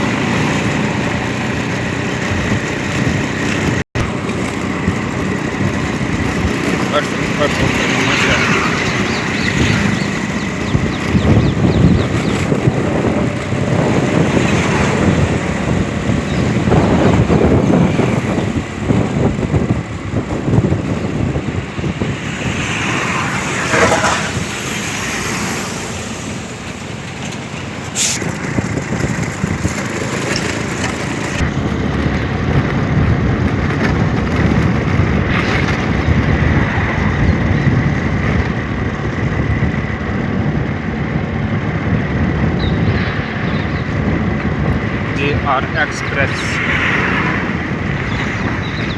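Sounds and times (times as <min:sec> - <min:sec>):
highway traffic rumbling: 0:00.0 - 0:48.9
vehicle passing with falling pitch: 0:21.2 - 0:27.1.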